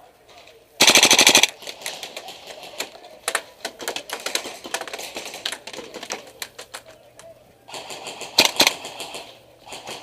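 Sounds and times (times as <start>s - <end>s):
full-auto airsoft rifle fire: 0.8s - 2.0s, 7.7s - 10.0s
airsoft shots clicking: 7.7s - 10.0s.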